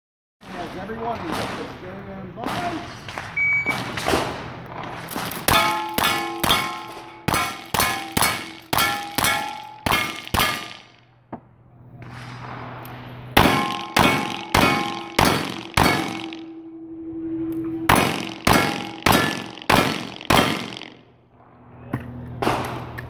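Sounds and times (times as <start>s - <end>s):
rapid gunfire: 0.4s - 6.7s, 13.4s - 16.4s, 17.9s - 21.0s
steel target ringing: 5.5s - 11.1s, 13.3s - 21.2s.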